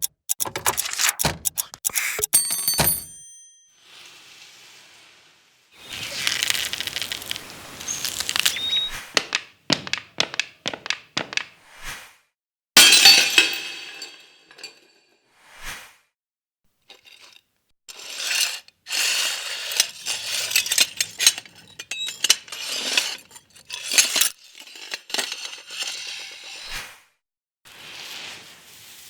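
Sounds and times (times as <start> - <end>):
small hard objects clinking: 5.8 - 11.5, 19.6 - 26.0.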